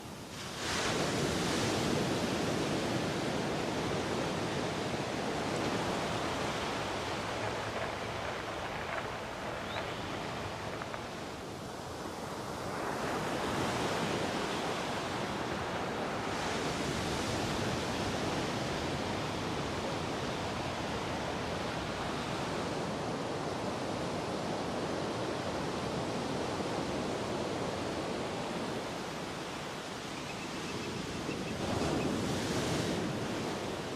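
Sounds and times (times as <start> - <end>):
waves breaking ashore: 0.0 - 33.9.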